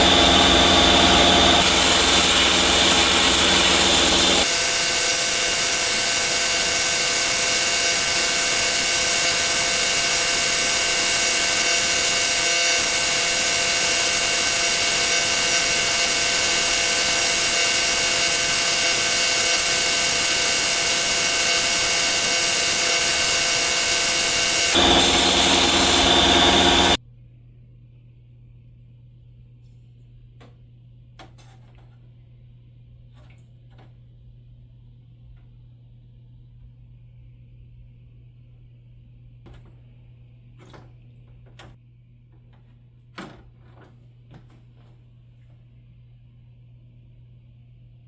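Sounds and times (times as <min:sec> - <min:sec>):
power tool motor whine: 0:00.0 - 0:27.0.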